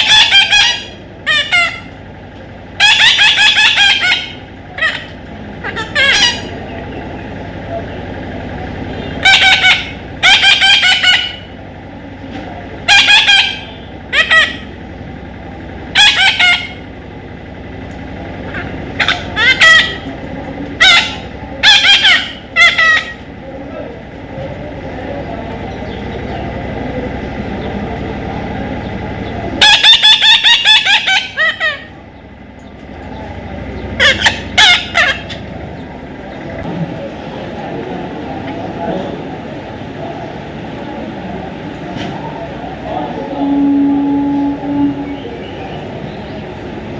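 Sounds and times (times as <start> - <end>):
parrot squawking: 0.0 - 2.0, 2.8 - 6.7, 9.2 - 11.6, 12.8 - 14.8, 15.9 - 16.9, 18.5 - 23.3, 29.5 - 32.0, 33.8 - 35.5
low background rumble: 0.0 - 46.9.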